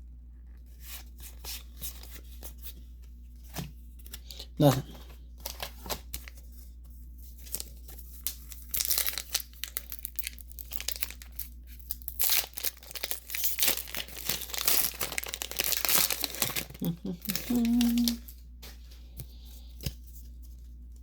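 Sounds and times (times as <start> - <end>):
foil wrapper tearing and crinkling: 5.4 - 6.4, 7.3 - 18.3.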